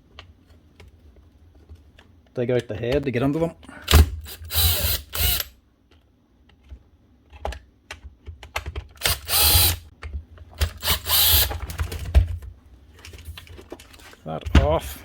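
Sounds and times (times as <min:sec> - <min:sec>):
rasping ratchet sound: 0:04.2 - 0:05.5, 0:09.0 - 0:09.9, 0:10.6 - 0:11.6.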